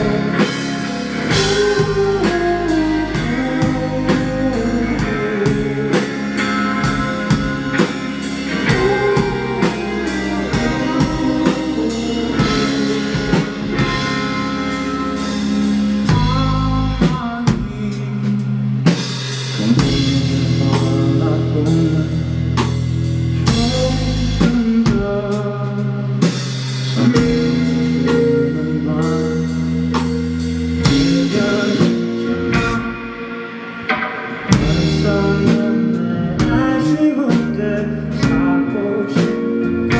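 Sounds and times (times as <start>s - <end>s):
person singing: 0.0s - 14.6s, 16.0s - 22.8s, 30.8s - 39.9s
bass guitar: 0.0s - 39.9s
drum kit: 0.0s - 39.9s
electric guitar: 0.0s - 39.9s.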